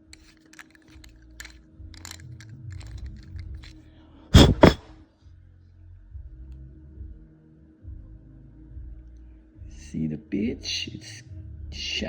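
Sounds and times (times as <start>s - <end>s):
thread-cutting tool clicking and scraping: 0.0s - 3.8s, 4.4s - 4.9s.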